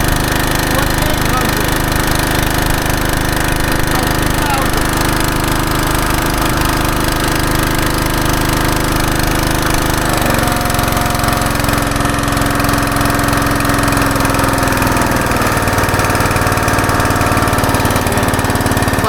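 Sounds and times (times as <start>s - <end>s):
pressure washer engine running: 0.0s - 19.0s.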